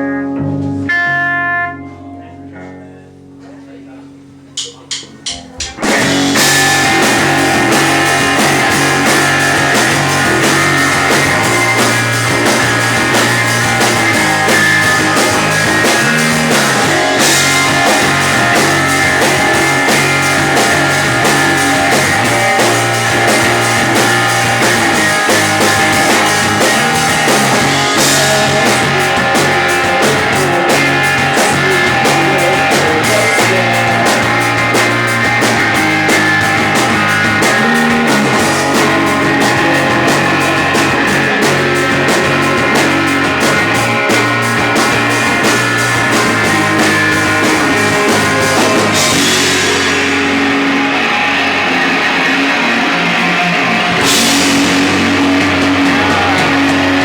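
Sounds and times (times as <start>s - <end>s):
loud rock music: 0.0s - 57.0s.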